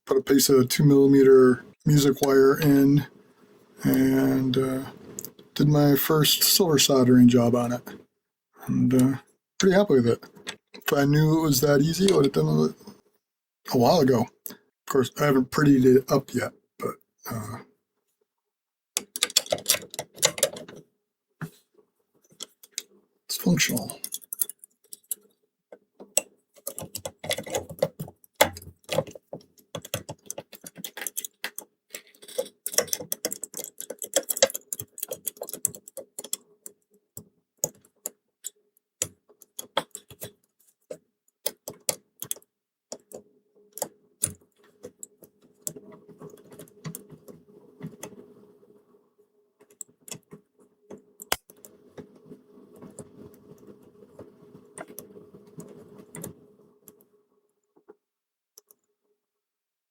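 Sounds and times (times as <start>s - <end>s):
lock picks clicking in padlock: 19.0s - 20.6s.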